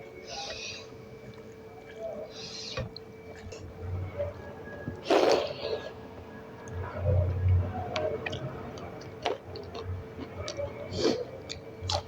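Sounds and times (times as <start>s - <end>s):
person chewing food: 7.9s - 12.0s.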